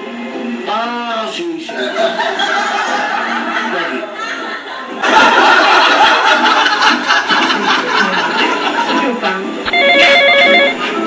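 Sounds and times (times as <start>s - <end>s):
people speaking: 0.7s - 4.2s, 7.6s - 10.2s
people laughing and snickering: 1.7s - 9.5s, 10.7s - 11.0s.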